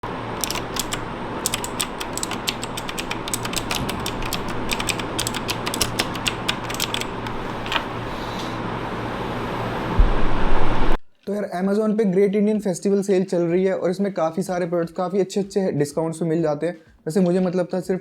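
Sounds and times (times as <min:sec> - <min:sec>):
steady low hum: 0:00.0 - 0:11.2
mechanical keyboard typing: 0:00.4 - 0:07.8.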